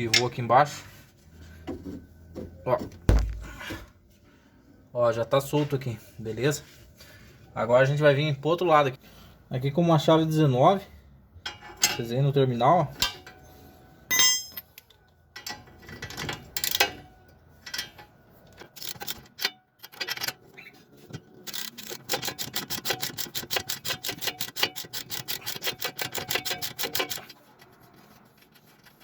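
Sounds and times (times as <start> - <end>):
wrench clinking on metal nut: 14.1 - 14.8
ratchet wrench clicking: 21.5 - 27.2.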